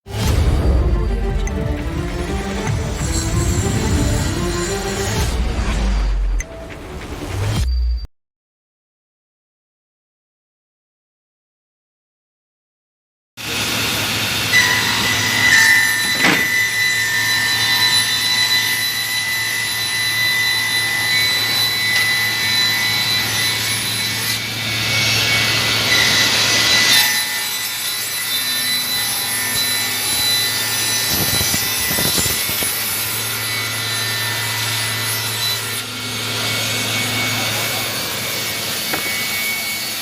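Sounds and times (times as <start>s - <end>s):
cutter heads whining: 0.1s - 5.5s, 13.5s - 40.0s
woodworking machine motor hum: 28.1s - 40.0s.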